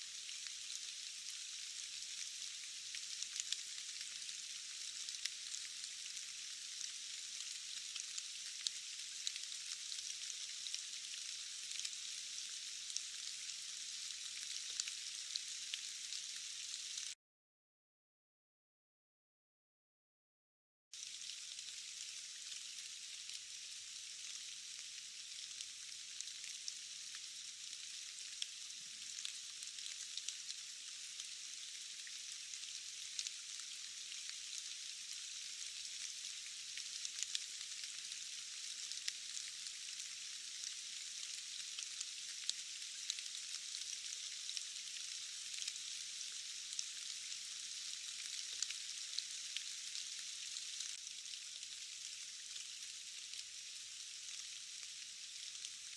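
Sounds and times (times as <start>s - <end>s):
rain hiss: 0.0s - 17.2s, 21.0s - 55.9s.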